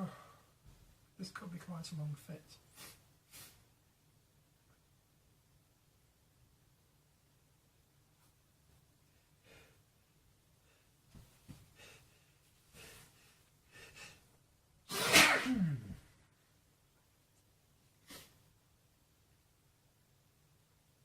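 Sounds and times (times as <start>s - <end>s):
man sneezing loudly: 14.9s - 16.0s.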